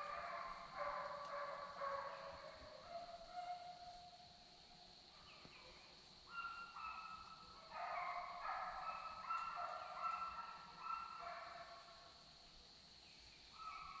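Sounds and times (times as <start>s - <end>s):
hounds baying: 0.0s - 3.8s, 6.3s - 11.8s.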